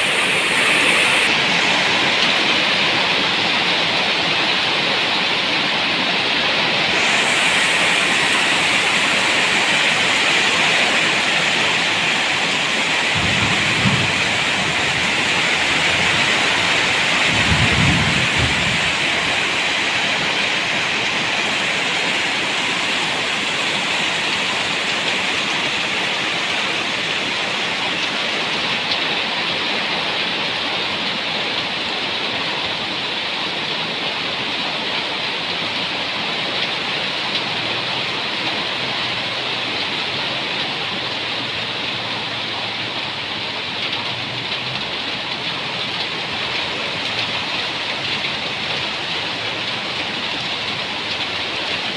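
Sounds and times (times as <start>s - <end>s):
heavy rain falling: 0.0s - 51.9s
low thunder rumbles: 13.0s - 20.4s.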